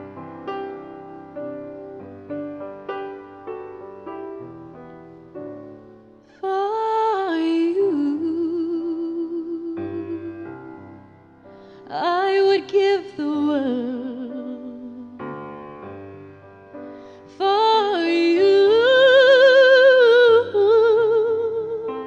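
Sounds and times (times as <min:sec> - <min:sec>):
piano chords: 0:00.0 - 0:22.0
woman singing a slow ballad: 0:06.3 - 0:11.1, 0:11.8 - 0:15.2, 0:17.3 - 0:22.0.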